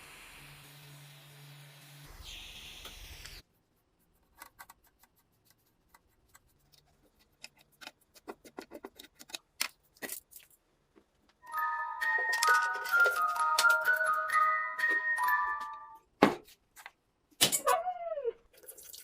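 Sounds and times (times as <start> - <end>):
steady hiss: 0.0 - 3.4.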